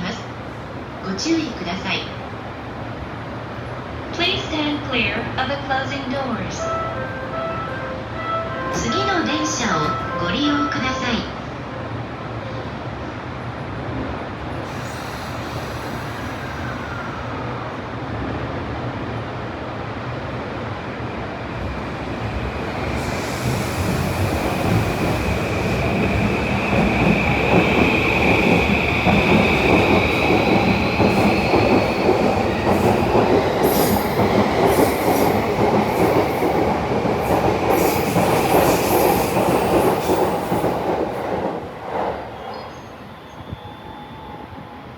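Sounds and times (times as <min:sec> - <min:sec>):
electric train whine: 0:21.4 - 0:44.9
train wheel squeal: 0:42.2 - 0:44.9.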